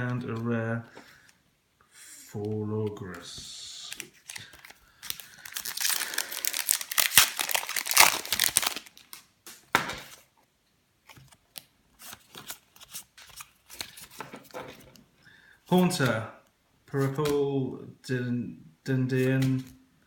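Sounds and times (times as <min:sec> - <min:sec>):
cards rustling and clicking: 0:02.2 - 0:10.3, 0:11.0 - 0:15.1, 0:15.8 - 0:16.2, 0:17.0 - 0:17.4, 0:19.1 - 0:19.8
foil wrapper tearing and crinkling: 0:04.0 - 0:09.2.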